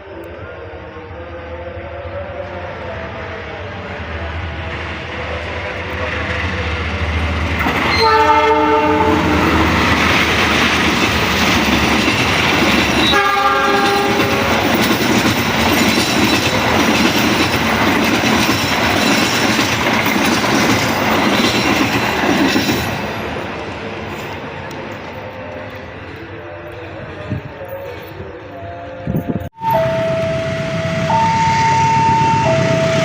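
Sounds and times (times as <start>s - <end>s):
train wheels on rails: 2.6s - 28.4s
train horn chord: 7.9s - 9.7s, 13.1s - 14.5s, 29.6s - 33.0s.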